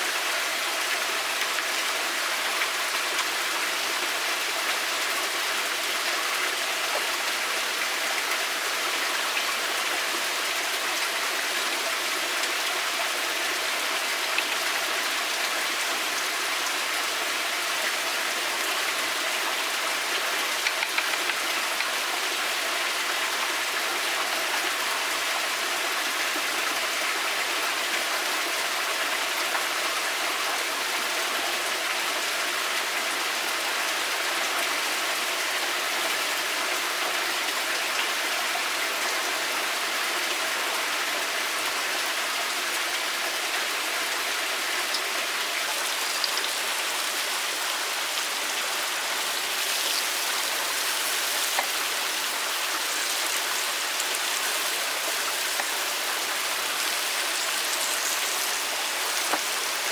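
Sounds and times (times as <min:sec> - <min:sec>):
running water: 0:00.0 - 0:28.0, 0:41.4 - 0:59.9.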